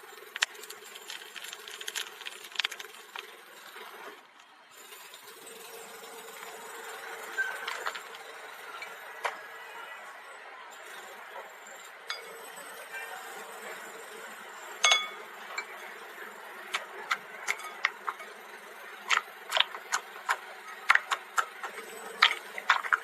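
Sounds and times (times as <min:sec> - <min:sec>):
clicks and taps of containers: 0:00.4 - 0:03.3, 0:16.7 - 0:18.4, 0:19.0 - 0:23.0
ringing clink: 0:12.1 - 0:12.6, 0:14.8 - 0:15.9.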